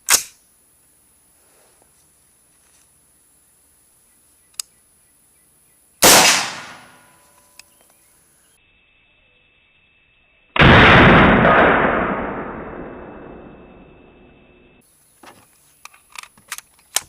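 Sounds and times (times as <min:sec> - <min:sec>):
faint click: 0:04.5 - 0:04.8
rifle shot: 0:06.0 - 0:07.1, 0:10.6 - 0:13.6.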